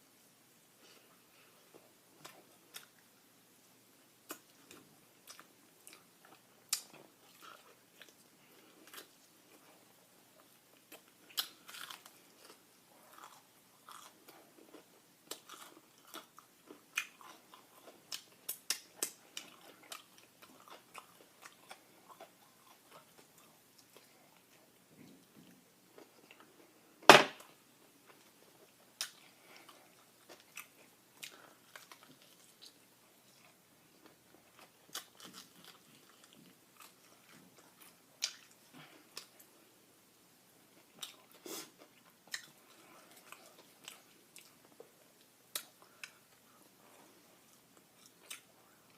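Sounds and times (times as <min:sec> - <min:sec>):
chewing: 0:04.2 - 0:26.7, 0:28.1 - 0:39.5, 0:40.8 - 0:48.9
crunching fried chicken: 0:10.8 - 0:23.5.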